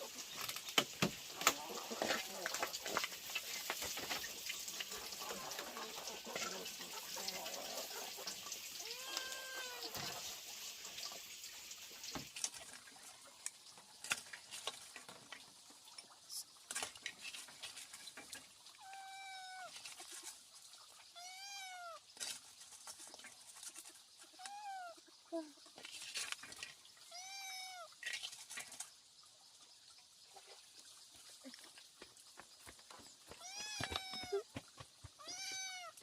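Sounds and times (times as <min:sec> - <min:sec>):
cat meowing: 0:08.8 - 0:10.2, 0:18.8 - 0:19.7, 0:21.2 - 0:22.0, 0:24.4 - 0:25.0, 0:27.1 - 0:27.9, 0:33.4 - 0:34.5, 0:35.2 - 0:36.0.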